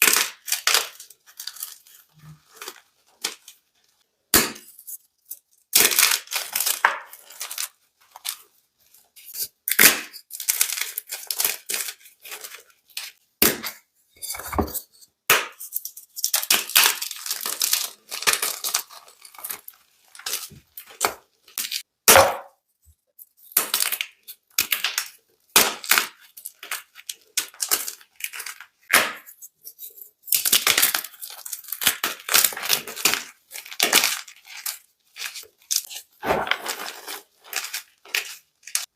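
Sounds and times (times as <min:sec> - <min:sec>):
chalk crunching and crackling: 0:04.6 - 0:13.2, 0:25.8 - 0:38.9.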